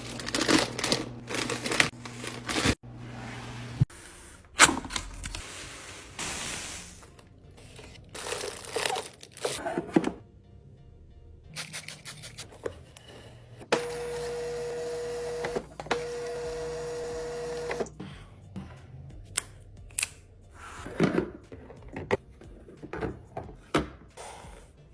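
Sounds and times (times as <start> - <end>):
packaging rustling and clicking: 0.0 - 2.8, 7.6 - 9.6.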